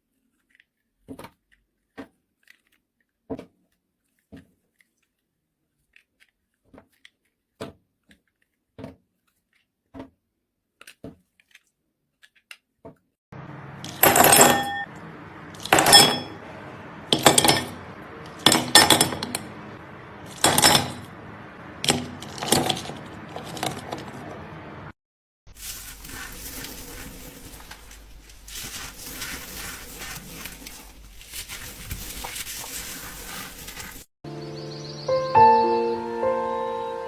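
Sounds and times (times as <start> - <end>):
metal utensils clinking on dishes: 13.7 - 24.3
steady hiss: 25.6 - 34.1.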